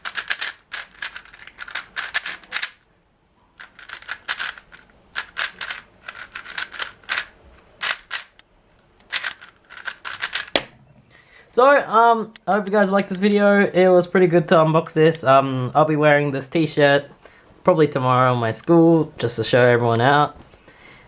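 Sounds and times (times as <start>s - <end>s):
puzzle cube plastic clicking: 0.0s - 2.8s, 3.6s - 10.7s.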